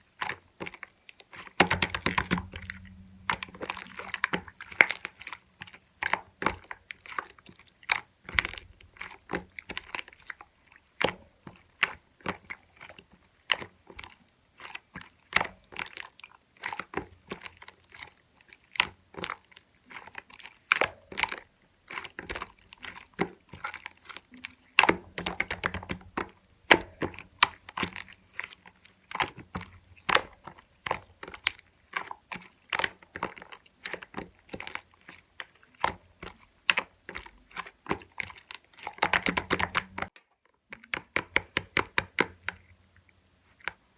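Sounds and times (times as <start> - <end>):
slime squishing and popping: 0.2 - 10.4, 18.8 - 42.6.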